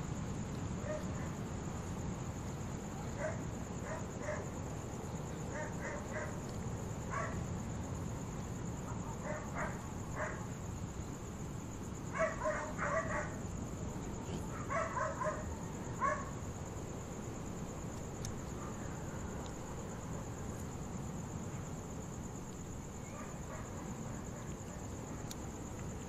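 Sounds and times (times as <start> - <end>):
crickets chirping: 0.0 - 26.0
distant dogs barking: 0.8 - 1.4, 3.0 - 4.6, 5.5 - 6.4, 7.1 - 7.4, 8.9 - 10.5, 12.1 - 13.4, 14.4 - 16.4, 18.5 - 19.4, 23.0 - 25.3.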